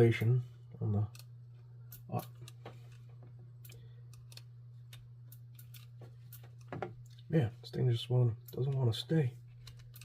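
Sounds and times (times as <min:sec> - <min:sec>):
low electrical hum: 0:00.0 - 0:10.0.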